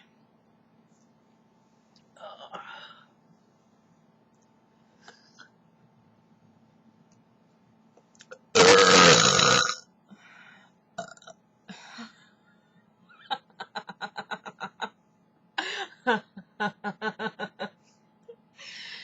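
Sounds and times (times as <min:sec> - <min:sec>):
human belch: 0:08.6 - 0:09.8.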